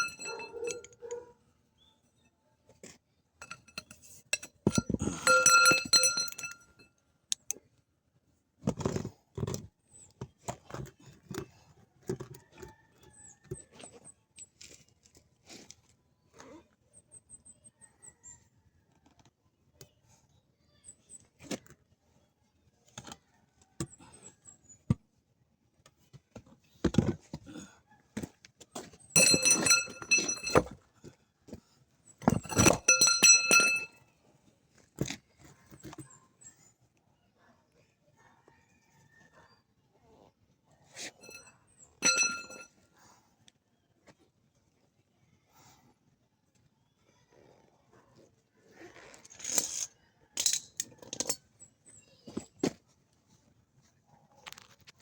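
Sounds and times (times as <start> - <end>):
metal tools clinking and knocking: 0.0 - 1.2, 3.4 - 6.8, 28.8 - 30.8, 32.2 - 34.0, 41.0 - 42.7, 49.2 - 51.6
loud ringing metal clanks: 29.2 - 30.7, 32.4 - 33.9, 42.0 - 42.6.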